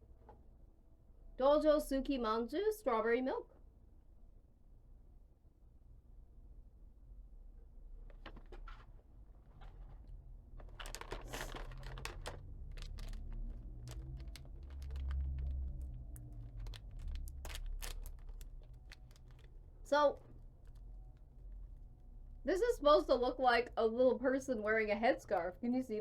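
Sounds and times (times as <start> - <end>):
snack wrapper crinkling and tearing: 10.6 - 21.8.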